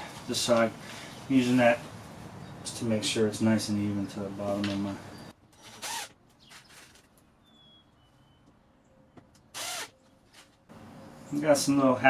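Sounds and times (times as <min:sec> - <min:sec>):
power drill running: 0:05.6 - 0:06.1, 0:09.6 - 0:09.9.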